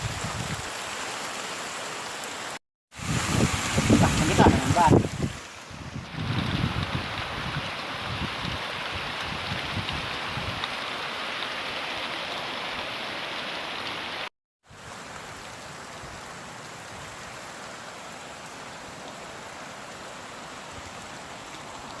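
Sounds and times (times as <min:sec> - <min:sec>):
wind rumbling on microphone: 0:00.0 - 0:00.7, 0:02.9 - 0:10.7
heavy rain falling: 0:00.0 - 0:22.0.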